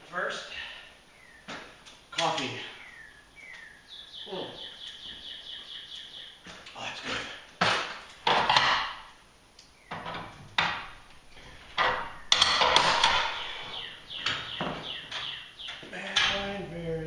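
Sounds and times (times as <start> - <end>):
tools and metal hardware clattering: 10.0 - 16.7.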